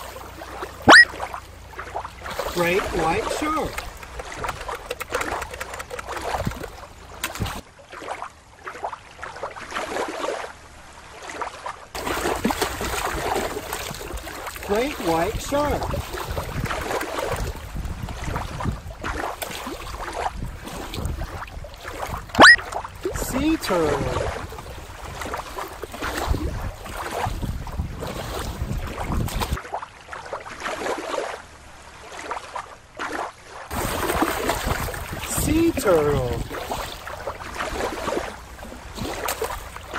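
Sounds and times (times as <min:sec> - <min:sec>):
surf-like wash: 0:00.0 - 0:39.9
water sloshing and splashing: 0:00.0 - 0:39.9
wind buffeting microphone: 0:15.1 - 0:29.6, 0:33.7 - 0:39.8.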